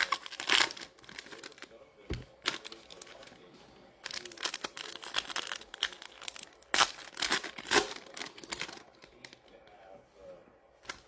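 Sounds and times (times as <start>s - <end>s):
wrapping ripping: 0.0s - 1.7s, 2.4s - 3.4s, 4.0s - 9.4s
plastic and foil wrapping crinkling: 0.0s - 10.0s.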